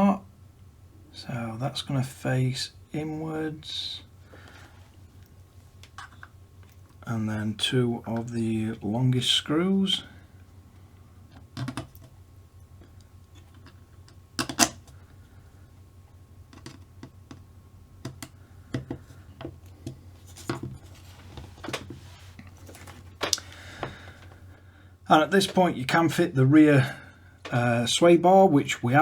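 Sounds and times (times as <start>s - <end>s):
small parts clicking and tapping: 11.3s - 12.2s, 12.8s - 15.0s, 16.5s - 17.4s.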